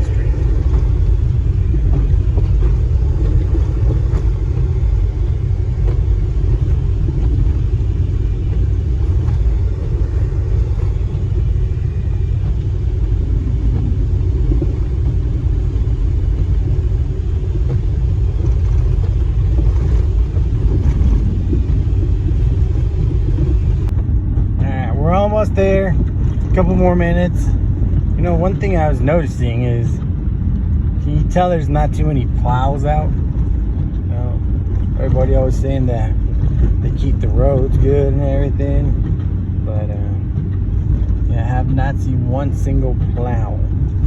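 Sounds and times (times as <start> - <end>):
car engine and tyres rumbling: 0.0 - 44.0.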